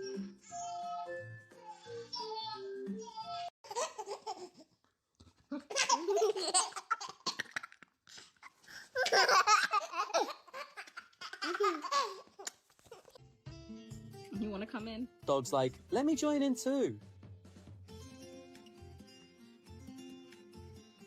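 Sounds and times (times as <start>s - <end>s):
baby laughing: 3.6s - 4.7s, 5.5s - 13.2s.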